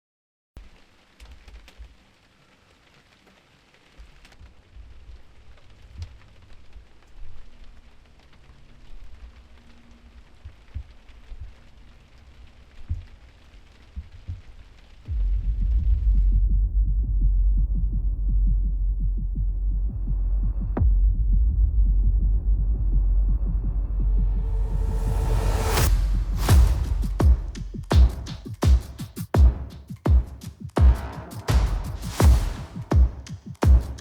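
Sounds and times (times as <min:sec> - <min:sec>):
steady rain: 0:00.6 - 0:15.8
low thumps: 0:15.1 - 0:34.0.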